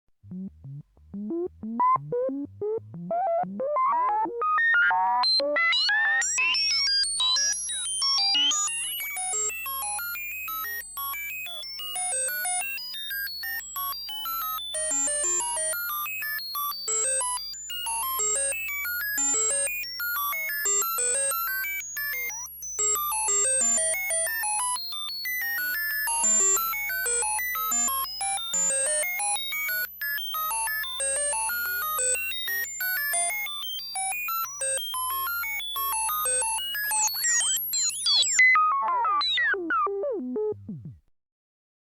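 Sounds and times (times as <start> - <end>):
synthesized electronic beeps: 0.2 - 6.4, 30.6 - 41.0.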